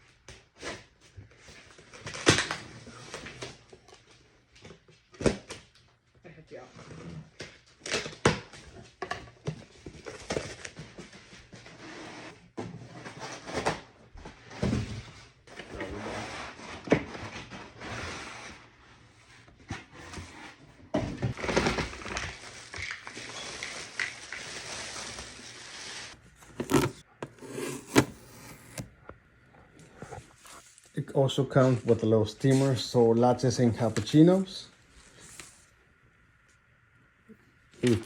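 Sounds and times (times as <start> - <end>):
packaging rustling: 26.2 - 29.0
objects knocking and scraping: 26.2 - 30.7.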